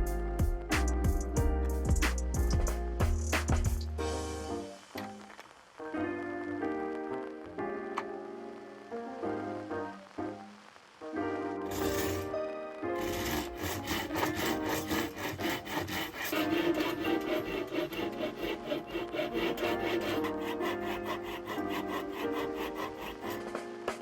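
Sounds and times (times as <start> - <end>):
background music: 0.0 - 24.0
hand saw cutting wood: 13.0 - 24.0.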